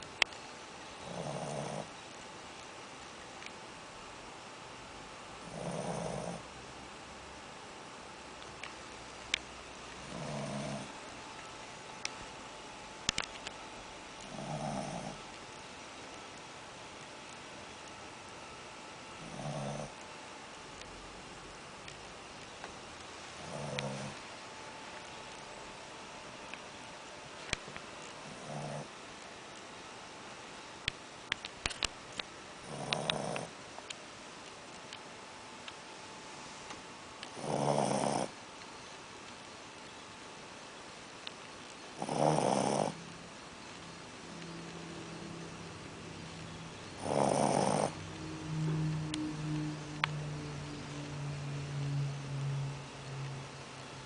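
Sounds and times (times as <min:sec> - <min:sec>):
puppy snoring: 0:01.0 - 0:02.0, 0:05.4 - 0:06.5, 0:10.0 - 0:11.0, 0:14.2 - 0:15.4, 0:19.2 - 0:20.0, 0:23.4 - 0:24.2, 0:28.2 - 0:28.9, 0:32.6 - 0:33.6, 0:37.3 - 0:38.4, 0:42.0 - 0:43.0, 0:47.0 - 0:49.3
sharp clicks: 0:30.8 - 0:35.0.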